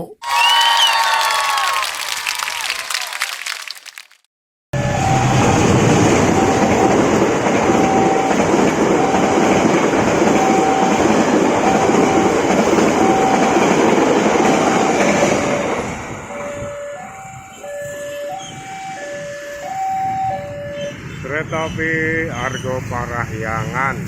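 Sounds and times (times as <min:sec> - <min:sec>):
train wheels rushing on rail: 0:04.8 - 0:17.4
crossing warning alarm tone: 0:04.8 - 0:21.9.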